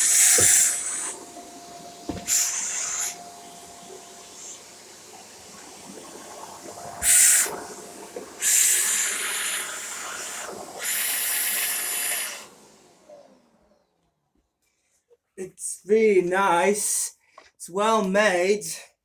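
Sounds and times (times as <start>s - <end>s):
loud hissing rushes of air: 0.0s - 13.0s
vacuum cleaner motor whine: 0.0s - 14.2s.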